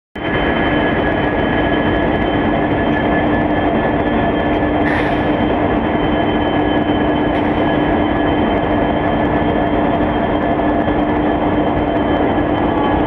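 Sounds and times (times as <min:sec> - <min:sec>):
diesel locomotive engine running: 0:00.2 - 0:13.0.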